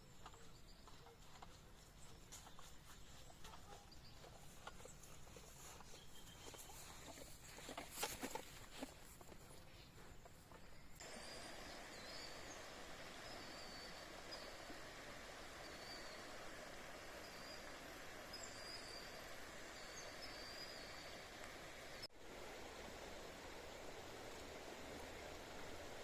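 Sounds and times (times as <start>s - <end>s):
bird chirping: 0.0s - 7.0s
flowing river water: 11.0s - 26.0s.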